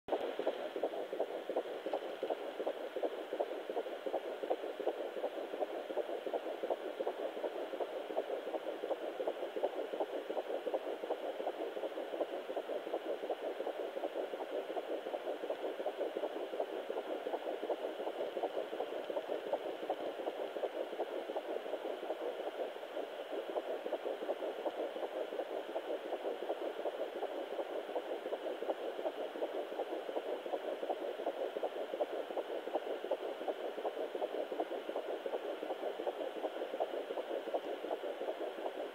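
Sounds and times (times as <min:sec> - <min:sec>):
fetal heartbeat on doppler: 0:00.1 - 0:38.9.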